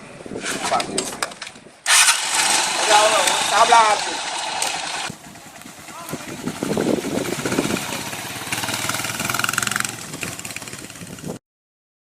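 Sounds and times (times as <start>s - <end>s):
small motorcycle engine running: 1.9s - 11.4s.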